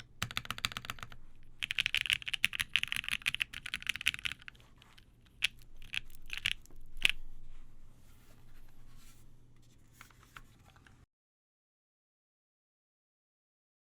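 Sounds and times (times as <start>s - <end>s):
key presses: 0.0s - 4.6s, 5.3s - 7.2s
mechanical keyboard typing: 0.0s - 4.6s, 5.3s - 7.2s.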